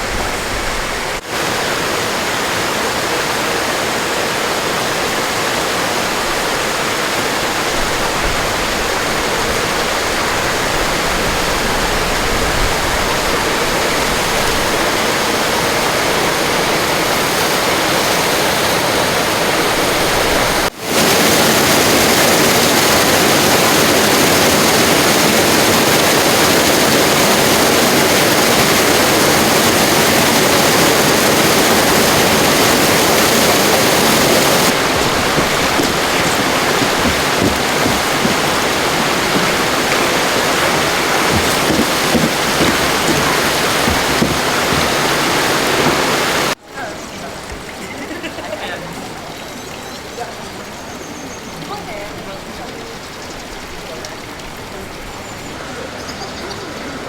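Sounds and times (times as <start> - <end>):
water rushing and cascading: 0.0 - 50.8.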